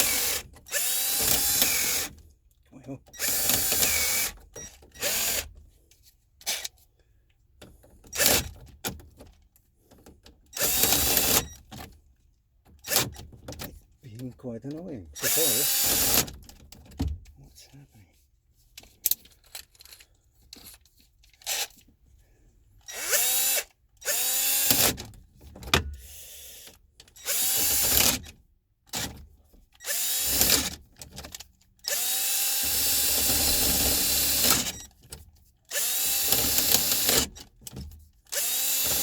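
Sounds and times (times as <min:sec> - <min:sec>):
power drill whining: 0:00.0 - 0:02.1, 0:03.2 - 0:05.5, 0:10.6 - 0:11.6, 0:15.2 - 0:16.2, 0:22.8 - 0:25.0, 0:25.9 - 0:28.2, 0:29.8 - 0:30.8, 0:31.8 - 0:34.9, 0:35.7 - 0:37.4, 0:38.3 - 0:39.0.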